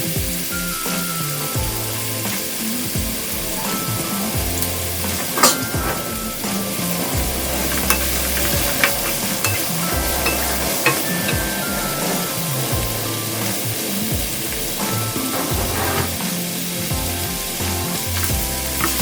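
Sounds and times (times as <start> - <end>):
background music: 0.0 - 19.0
food sizzling in a pan: 0.0 - 19.0
utensil clicking against pan: 0.3 - 12.8, 13.4 - 19.0.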